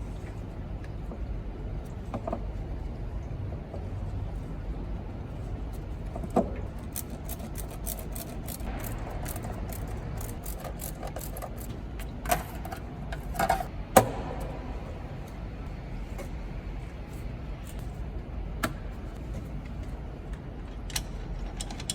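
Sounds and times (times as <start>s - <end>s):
tools clicking and knocking: 6.2s - 14.1s
low hum: 8.4s - 20.7s.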